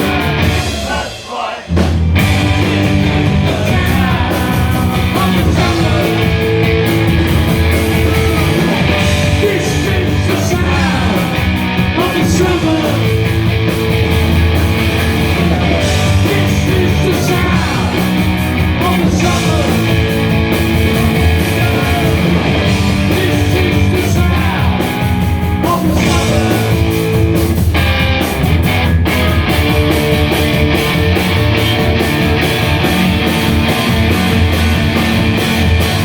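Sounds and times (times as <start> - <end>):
punk rock band playing: 0.0 - 36.0
person singing: 2.5 - 6.4, 7.9 - 13.2, 15.4 - 18.1, 25.6 - 26.9.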